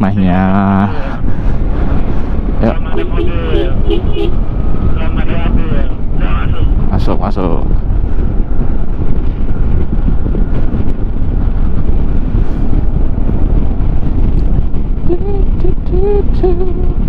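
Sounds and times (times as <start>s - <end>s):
person speaking: 0.0s - 4.2s, 4.9s - 6.8s
road and riding noise: 0.0s - 17.0s
wind buffeting a microphone: 0.0s - 17.0s.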